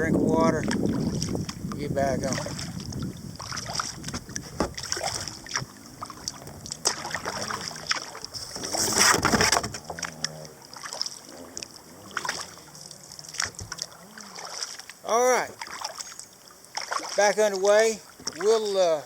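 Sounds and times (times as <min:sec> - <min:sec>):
kayak scraping rush: 0:00.0 - 0:16.1
knocks on kayak hull: 0:04.1 - 0:05.7.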